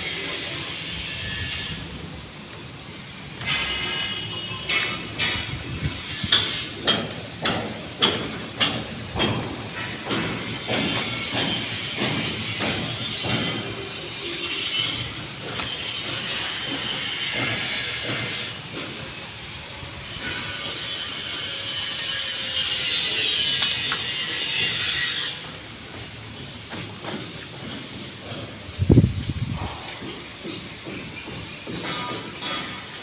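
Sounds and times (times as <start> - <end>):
sharp knocks: 6.3 - 13.7.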